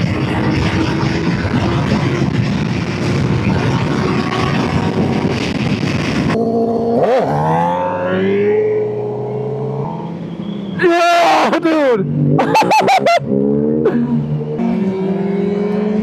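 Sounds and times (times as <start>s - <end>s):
wind rush: 0.0s - 6.4s
sport bike engine: 0.0s - 10.8s.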